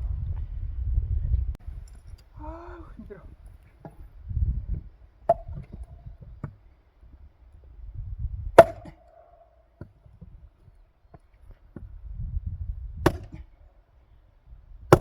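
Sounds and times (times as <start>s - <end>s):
axe striking firewood: 5.3s - 6.6s, 8.6s - 10.3s, 13.0s - 13.6s.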